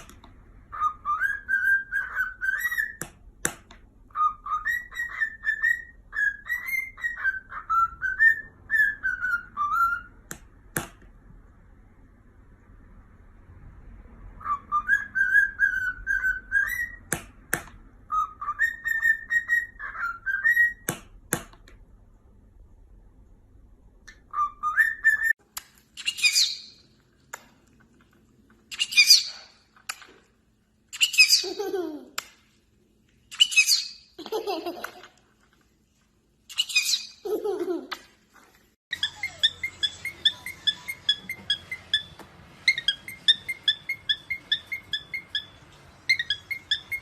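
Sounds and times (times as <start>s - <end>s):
parrot whistling a tune: 0.7s - 3.0s, 4.1s - 10.2s, 14.4s - 17.1s, 18.1s - 20.9s, 24.2s - 25.4s, 33.3s - 34.1s, 38.9s - 47.0s.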